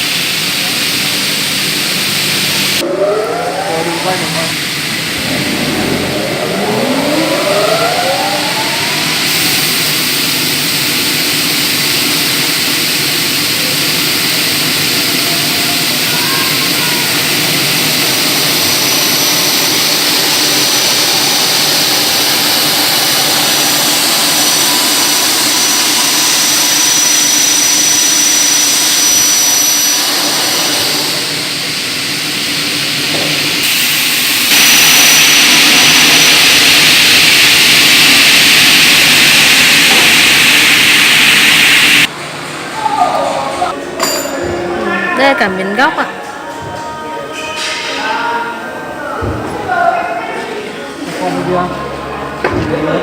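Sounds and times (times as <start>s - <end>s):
cutting saw whirring: 0.0s - 42.1s.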